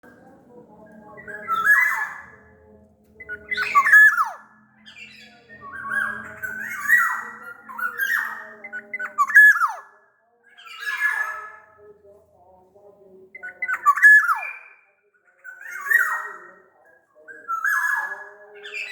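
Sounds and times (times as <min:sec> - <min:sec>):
bird squawking and whistling: 0:01.3 - 0:02.3, 0:03.2 - 0:09.9, 0:13.4 - 0:14.8.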